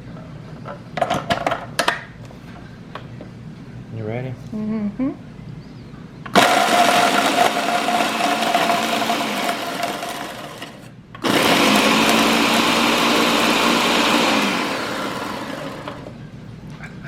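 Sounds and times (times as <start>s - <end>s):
kitchen appliance motor grinding: 6.3s - 16.2s.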